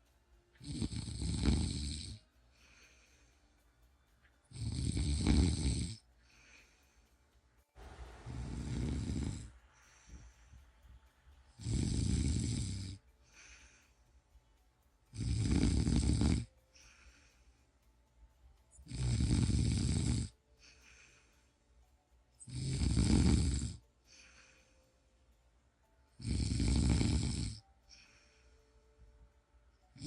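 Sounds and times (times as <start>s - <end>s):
faint breathing: 0.0s - 30.0s
person snoring: 0.6s - 3.3s, 4.5s - 6.8s, 8.2s - 10.4s, 11.5s - 13.8s, 15.1s - 17.5s, 18.8s - 21.3s, 22.4s - 24.8s, 26.2s - 28.5s.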